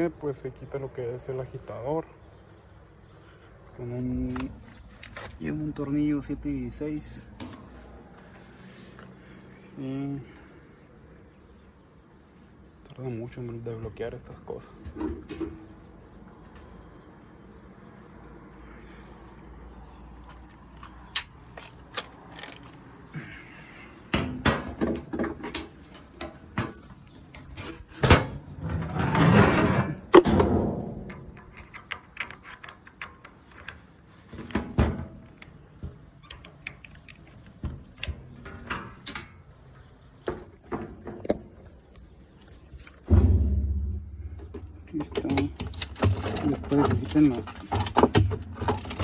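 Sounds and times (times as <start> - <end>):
plastic and metal parts rattling: 20.9 - 23.0, 42.4 - 49.0
scraping rattle: 25.9 - 32.7, 42.5 - 49.0.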